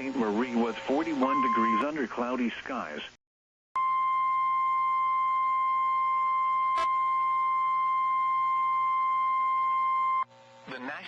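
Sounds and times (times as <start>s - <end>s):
high-pitched alarm beep: 0.9s - 1.9s, 3.8s - 10.3s.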